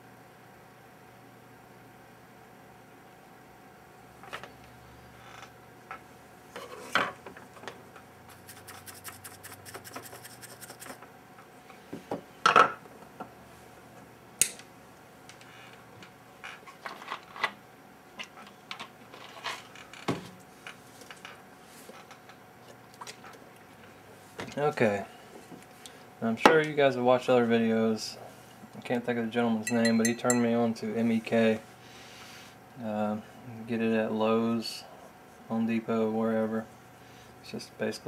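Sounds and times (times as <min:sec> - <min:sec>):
fine scratching strokes: 0:08.3 - 0:11.0.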